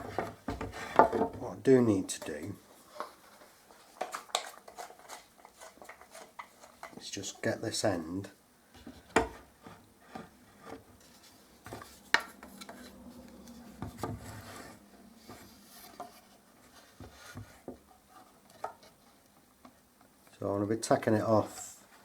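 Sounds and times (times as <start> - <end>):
wooden tools knocking and rubbing: 0.0 - 1.5, 2.1 - 7.1, 8.8 - 19.8.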